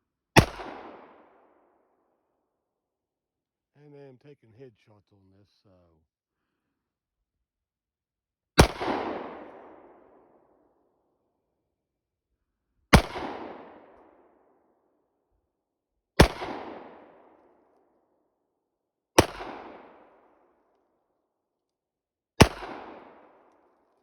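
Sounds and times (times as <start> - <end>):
pistol shots with echo: 0.4 - 1.8, 8.6 - 10.6, 12.9 - 14.5, 16.2 - 17.8, 19.2 - 20.7, 22.4 - 23.9.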